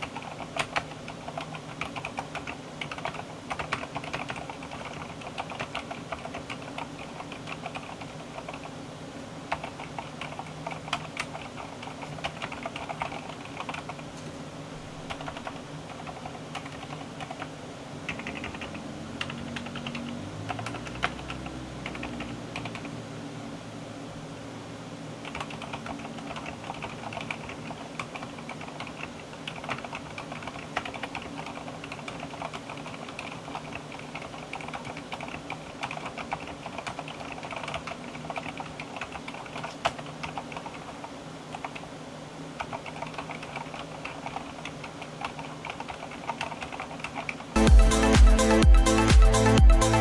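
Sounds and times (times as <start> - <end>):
mechanical keyboard typing: 0.0 - 8.7, 9.5 - 14.3, 14.9 - 17.5, 18.1 - 22.9, 25.2 - 41.9, 42.6 - 47.7.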